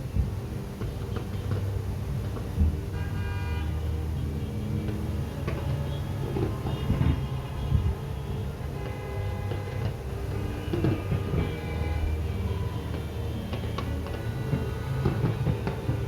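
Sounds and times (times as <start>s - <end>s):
horns sounding held tones: 2.9s - 16.0s
fireworks booming: 8.6s - 16.0s.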